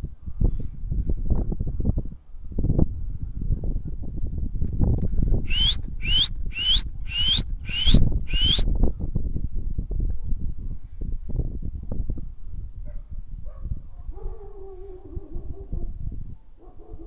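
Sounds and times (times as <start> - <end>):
wind buffeting microphone: 0.0 - 17.0
short high rising calls: 5.5 - 8.6.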